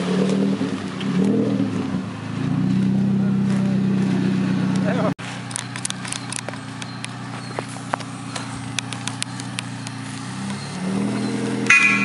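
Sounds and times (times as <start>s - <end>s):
off-road vehicle engine running: 0.0s - 12.0s
sharp clicks and knocks: 5.5s - 10.6s.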